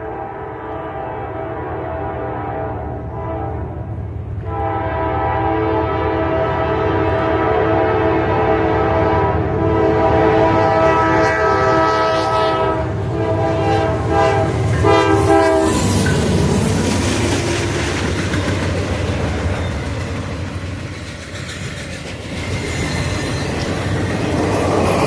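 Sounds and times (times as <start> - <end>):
locomotive air horn chord: 0.0 - 15.9
passing train rumble: 0.0 - 25.0.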